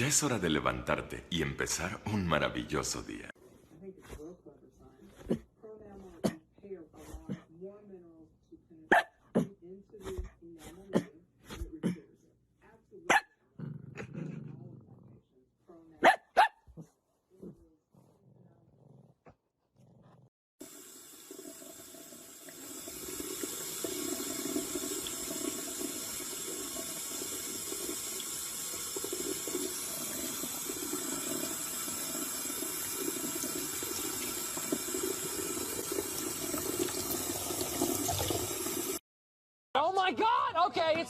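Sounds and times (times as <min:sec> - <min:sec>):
running water: 0:20.6 - 0:39.0.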